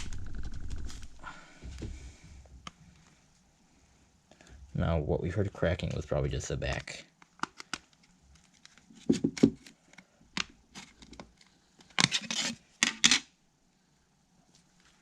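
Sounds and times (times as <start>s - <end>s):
smartphone cracking and creaking: 0.0s - 1.2s.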